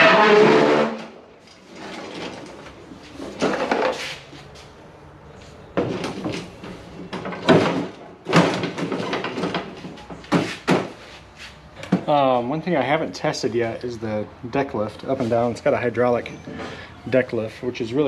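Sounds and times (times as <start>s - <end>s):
knocks and clatters: 5.7s - 11.0s.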